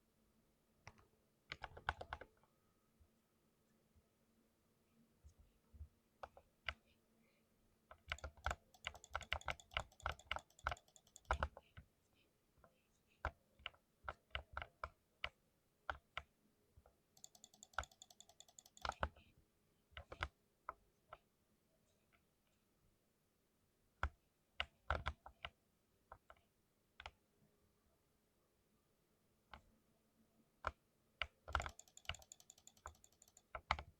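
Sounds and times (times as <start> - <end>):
mechanical keyboard key clacks: 8.1 - 11.4, 17.2 - 19.1, 31.6 - 33.5.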